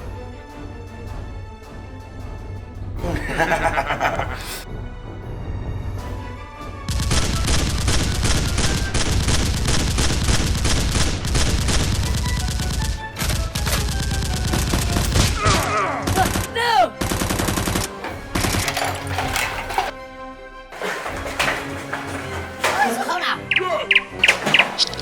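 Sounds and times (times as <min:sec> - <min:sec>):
rapid automatic gunfire: 0:06.9 - 0:15.3, 0:16.1 - 0:18.7.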